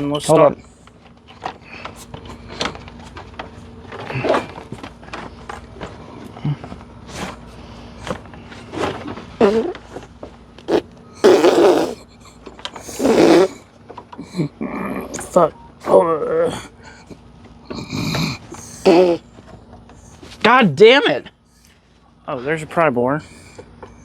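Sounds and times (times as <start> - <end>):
loud rasping noises: 6.4 - 10.0, 10.6 - 13.6, 17.7 - 19.2.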